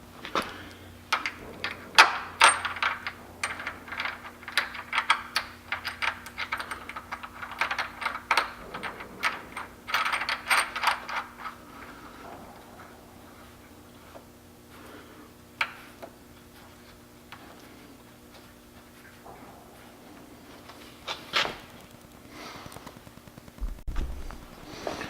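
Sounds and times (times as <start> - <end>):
metal tools clinking: 1.2 - 12.4.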